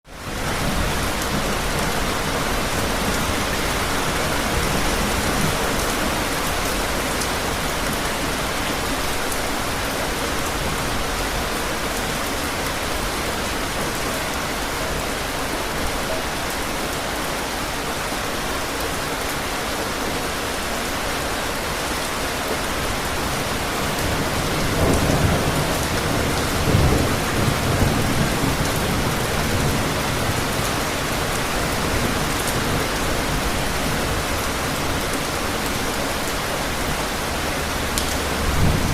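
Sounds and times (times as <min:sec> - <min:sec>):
heavy rain falling: 0:00.1 - 0:38.9
thunder rumbling: 0:37.3 - 0:38.9.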